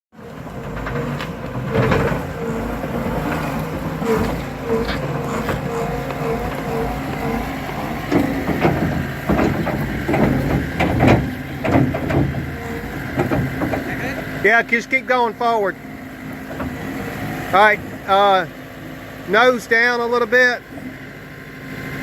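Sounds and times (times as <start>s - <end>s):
skid steer engine running: 0.2s - 22.0s
machine clanks and knocks: 0.6s - 14.4s.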